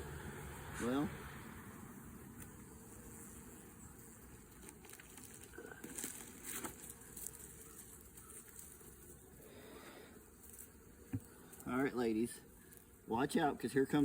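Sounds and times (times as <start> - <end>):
light knocks and crinkles: 4.4 - 9.1.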